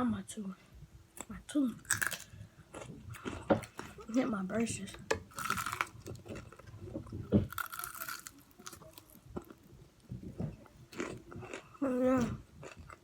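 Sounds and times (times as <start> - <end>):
chewing and crunching food: 1.8 - 4.3, 5.2 - 13.0.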